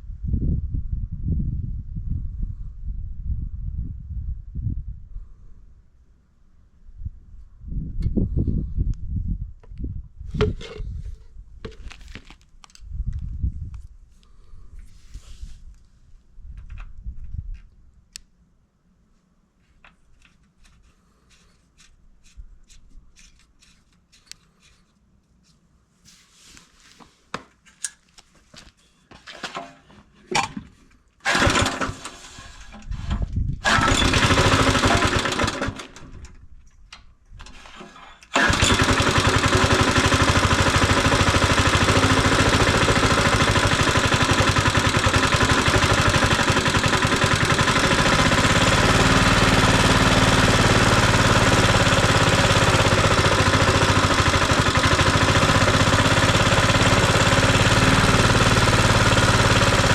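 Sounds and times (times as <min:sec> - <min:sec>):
petrol engine starting and running: 0:31.2 - 0:36.3, 0:37.4 - 0:59.9.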